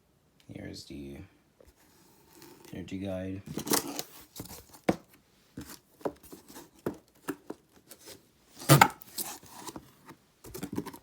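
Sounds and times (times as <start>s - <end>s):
cardboard and paper handling: 1.7s - 2.8s, 3.5s - 11.0s.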